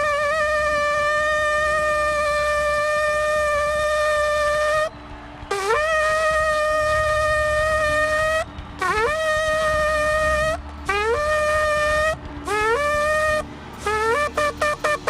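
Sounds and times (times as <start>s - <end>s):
shofar blasts: 0.0s - 15.0s.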